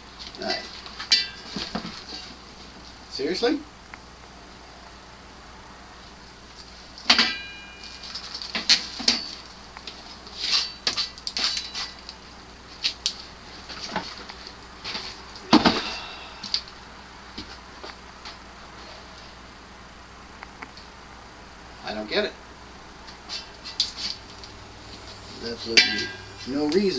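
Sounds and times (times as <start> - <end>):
ringing metal strike: 1.1 - 1.6, 7.1 - 8.3, 25.4 - 26.9
metal clanks and taps: 25.8 - 26.5.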